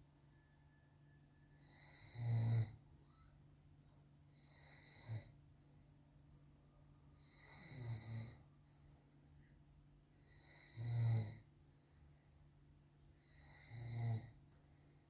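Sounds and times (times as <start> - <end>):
man snoring: 1.7 - 2.8, 4.4 - 5.3, 7.2 - 8.4, 10.3 - 11.4, 13.4 - 14.4.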